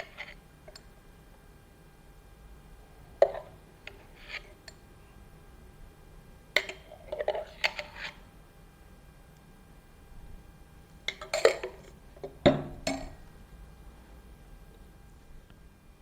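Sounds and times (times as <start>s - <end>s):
cups clinking: 3.2s - 4.8s, 6.6s - 8.2s, 11.0s - 13.2s
kitchenware knocking: 12.5s - 13.2s.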